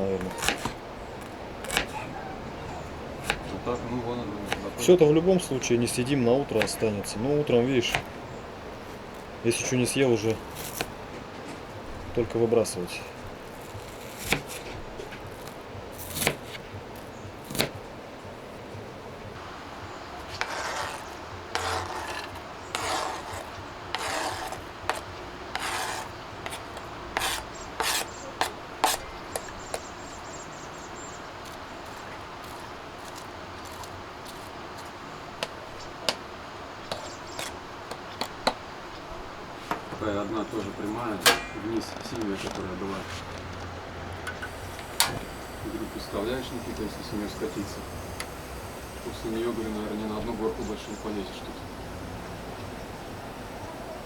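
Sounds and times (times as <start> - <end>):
rasping strokes: 20.2 - 29.5, 44.2 - 54.0
sharp clicks and knocks: 41.2 - 42.7, 43.4 - 45.4.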